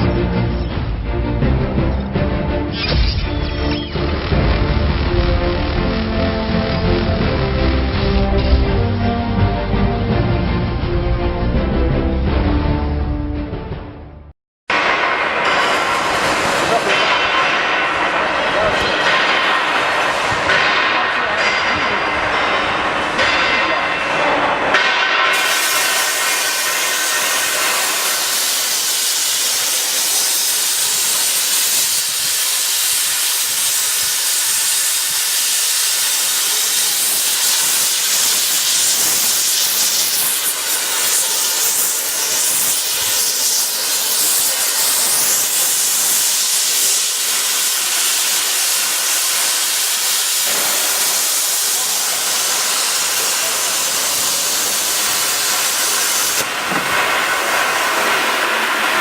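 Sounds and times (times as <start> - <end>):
plasma torch cutting steel hiss: 14.7 - 59.0.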